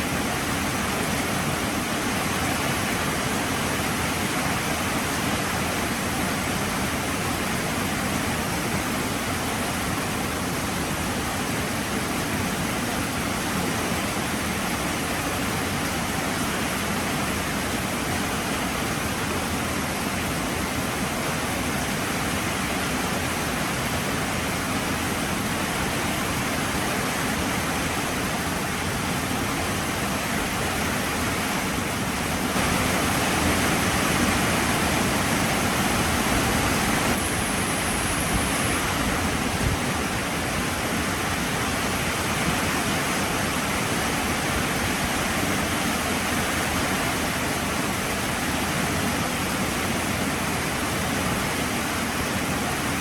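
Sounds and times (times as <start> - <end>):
heavy rain falling: 14.4 - 51.6.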